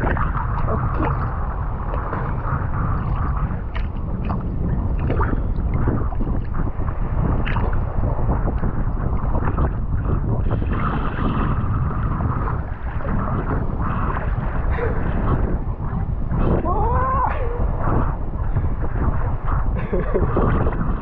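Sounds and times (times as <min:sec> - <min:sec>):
water sloshing and splashing: 0:00.0 - 0:16.6
wind buffeting microphone: 0:00.0 - 0:21.0.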